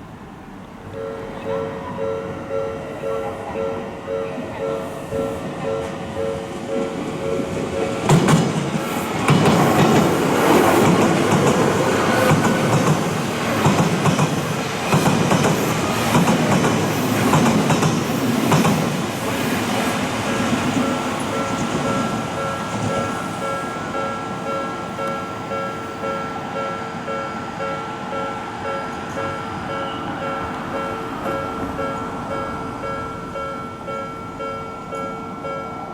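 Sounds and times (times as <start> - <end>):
crossing bell dinging: 0.8 - 8.8, 20.7 - 35.9
train wheels clacking over rails: 4.3 - 27.2.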